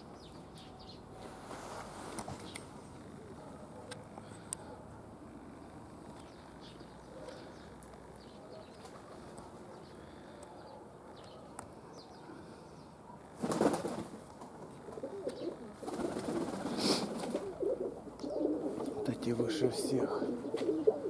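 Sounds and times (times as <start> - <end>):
pigeons cooing: 6.4 - 12.8, 13.4 - 21.0.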